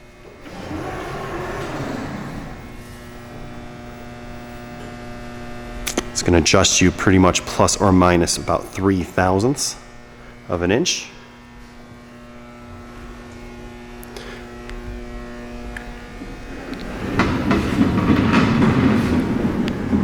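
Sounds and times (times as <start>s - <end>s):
motorized saw fence humming: 0.0s - 20.0s
sliding table carriage rolling: 0.4s - 3.0s, 16.2s - 20.0s.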